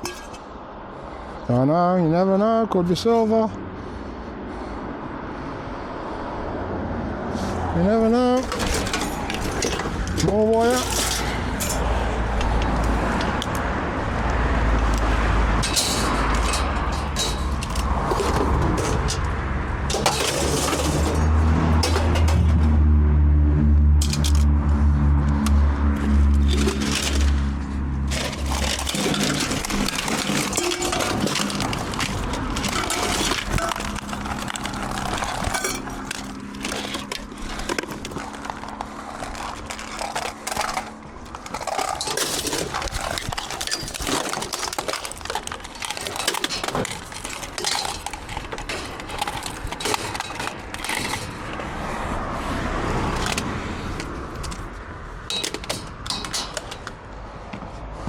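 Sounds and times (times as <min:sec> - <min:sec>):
scrap metal clattering: 0:00.0 - 0:00.5, 0:07.3 - 0:22.9, 0:24.0 - 0:24.5, 0:25.9 - 0:52.2, 0:55.3 - 0:57.1.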